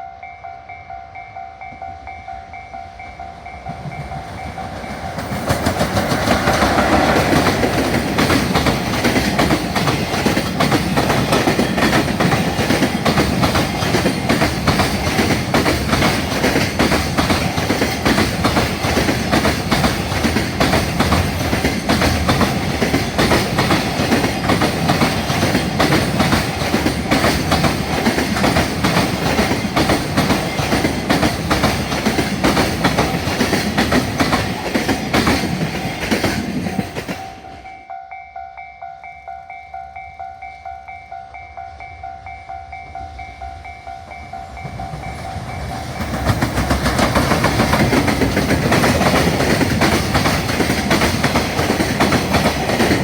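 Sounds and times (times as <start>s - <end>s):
level-crossing warning bell ringing: 0.0s - 35.8s, 36.6s - 53.0s
freight train passing: 0.0s - 53.0s
wheels clattering over rail joints: 3.8s - 37.3s, 45.5s - 53.0s.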